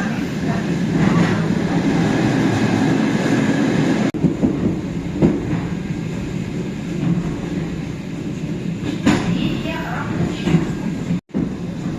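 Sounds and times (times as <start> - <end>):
train wheels rumbling on rails: 0.0 - 11.9
wheels clacking over rail joints: 0.8 - 11.9.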